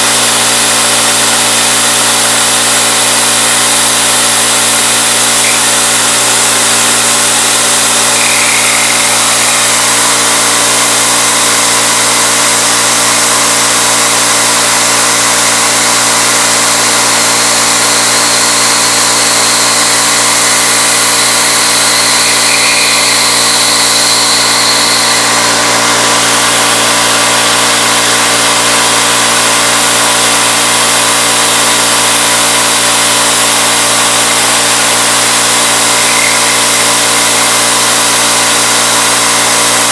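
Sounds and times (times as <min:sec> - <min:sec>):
milling machine cutting metal: 0:00.0 - 0:39.9
faint high whine: 0:05.2 - 0:10.3, 0:17.6 - 0:25.5, 0:34.6 - 0:37.9.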